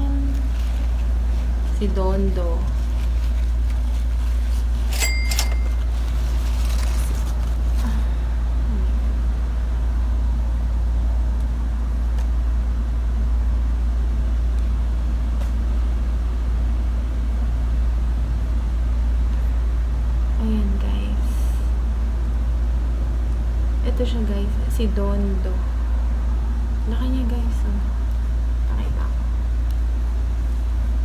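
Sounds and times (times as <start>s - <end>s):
steady low rumble: 0.0s - 31.0s
packaging rustling: 0.2s - 8.1s.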